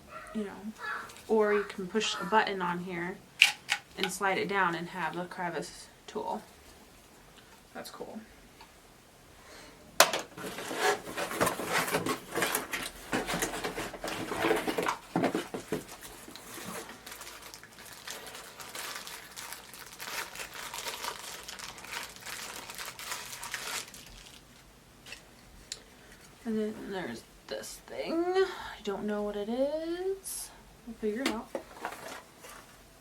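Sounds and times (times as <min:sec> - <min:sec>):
packaging crinkling and rustling: 0:10.3 - 0:26.4, 0:31.3 - 0:32.8.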